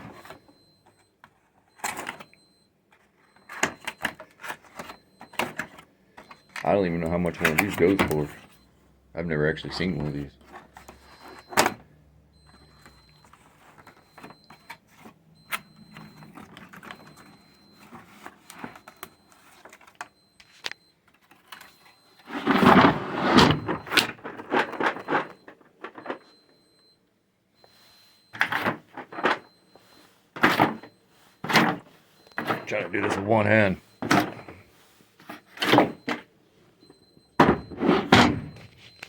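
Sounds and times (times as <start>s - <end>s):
tools scraping and rattling: 21.1s - 26.6s, 28.3s - 34.6s, 37.4s - 39.0s.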